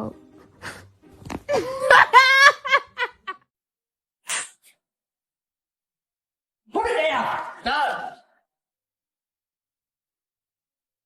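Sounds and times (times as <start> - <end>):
person laughing: 1.5 - 3.4
short breathy puff: 4.3 - 4.8.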